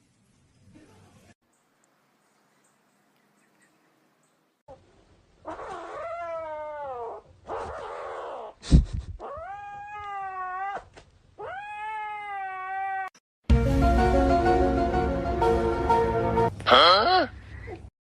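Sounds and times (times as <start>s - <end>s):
cat yowling: 5.5s - 8.6s, 9.2s - 13.1s.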